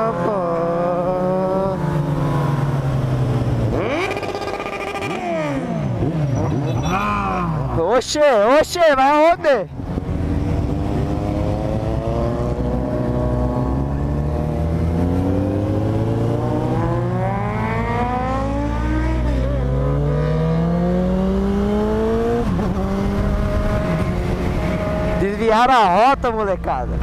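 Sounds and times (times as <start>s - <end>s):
motorcycle engine accelerating: 0.0s - 7.8s, 9.7s - 25.3s.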